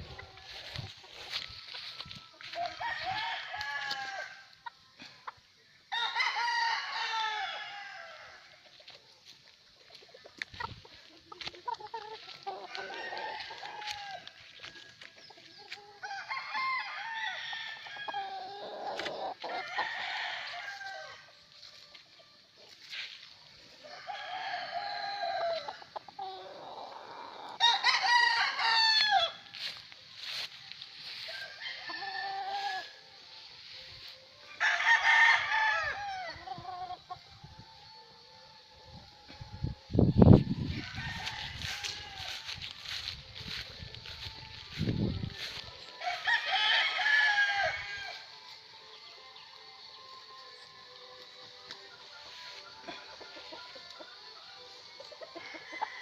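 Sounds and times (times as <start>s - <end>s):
roosters crowing: 0.0s - 5.1s, 5.9s - 8.6s, 11.4s - 21.4s, 23.8s - 33.9s, 34.5s - 37.2s, 40.2s - 48.4s, 52.4s - 56.0s.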